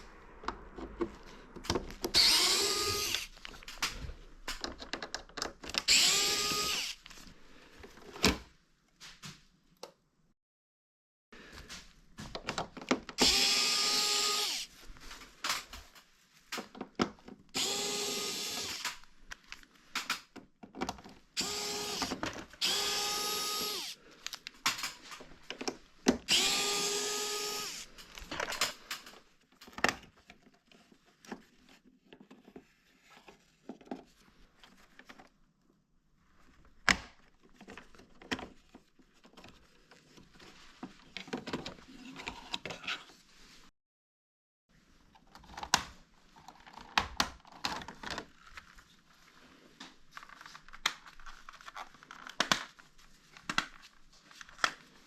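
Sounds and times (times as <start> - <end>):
parts clicking and knocking: 0.4 - 6.9
electric screwdriver whine: 2.1 - 3.3, 5.9 - 7.0, 13.2 - 14.7, 17.6 - 19.0, 21.4 - 24.0, 26.3 - 27.9.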